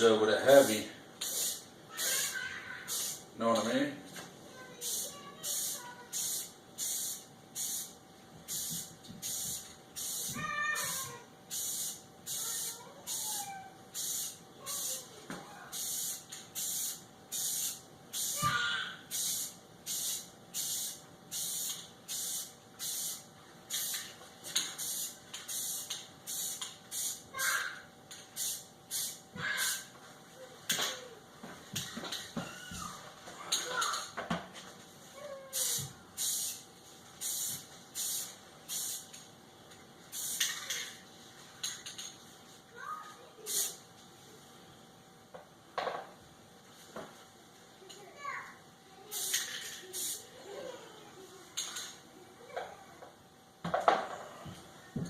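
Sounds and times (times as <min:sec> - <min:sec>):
spray paint hissing bursts: 0:01.2 - 0:03.3, 0:04.8 - 0:15.1, 0:15.7 - 0:24.1, 0:24.8 - 0:27.7, 0:28.3 - 0:29.9, 0:35.5 - 0:36.6, 0:37.2 - 0:39.2, 0:40.1 - 0:40.9, 0:43.4 - 0:43.8, 0:49.1 - 0:50.3.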